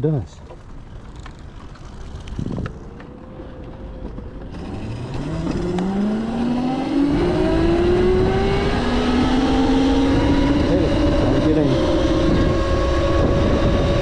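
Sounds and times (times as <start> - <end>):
electric motorcycle motor whining: 4.4 - 14.0.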